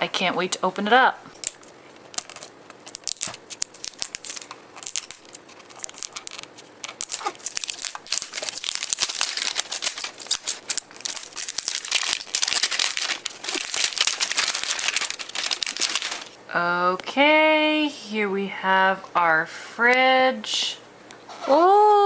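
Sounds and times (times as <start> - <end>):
packaging crinkling and tearing: 1.3 - 16.4.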